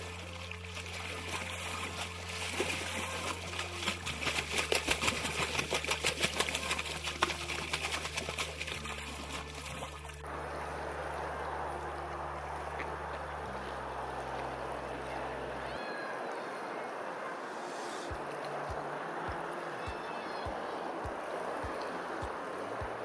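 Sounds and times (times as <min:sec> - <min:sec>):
water splashing and trickling: 0:00.0 - 0:23.0
even hiss: 0:17.3 - 0:18.1.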